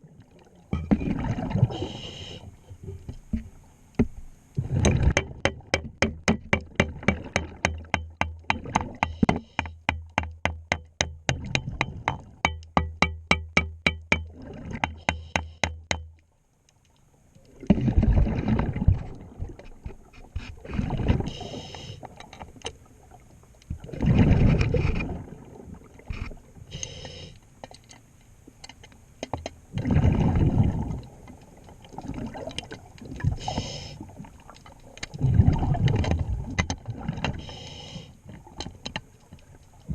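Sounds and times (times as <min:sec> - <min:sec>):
low hum: 0:00.0 - 0:39.9
regulator breathing: 0:01.7 - 0:02.6, 0:21.3 - 0:22.1, 0:26.7 - 0:27.5, 0:33.4 - 0:34.0, 0:37.4 - 0:38.2
underwater metallic ticking: 0:05.1 - 0:16.2.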